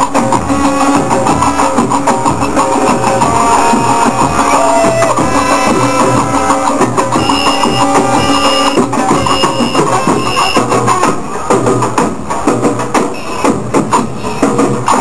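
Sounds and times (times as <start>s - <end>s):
marching band drums: 0.0s - 15.0s
repeating melodic line: 7.0s - 10.7s.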